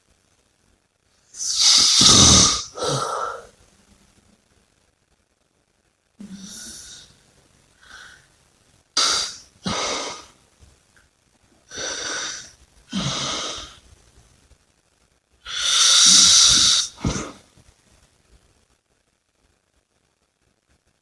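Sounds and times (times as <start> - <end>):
person breathing heavily: 1.4 - 3.6, 6.2 - 7.1, 9.0 - 10.3, 11.7 - 13.8, 15.5 - 17.4.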